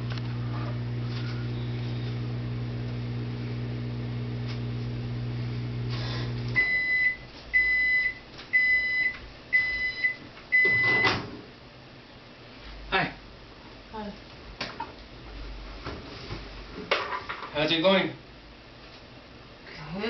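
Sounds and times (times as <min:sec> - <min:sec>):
microwave oven humming: 0:00.0 - 0:12.1
high beeps: 0:06.6 - 0:11.1.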